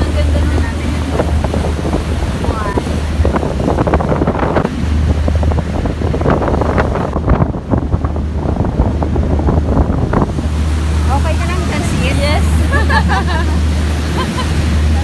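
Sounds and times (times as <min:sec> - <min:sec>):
low engine hum: 0:00.0 - 0:15.0
water splashing along hull: 0:00.0 - 0:15.0
wind buffeting microphone: 0:00.0 - 0:15.0.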